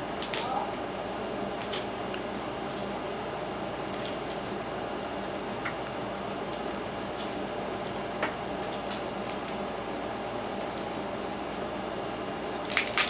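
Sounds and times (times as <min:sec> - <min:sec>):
low background hum: 0:00.0 - 0:13.0
crab shells clicking and snapping: 0:12.6 - 0:13.0.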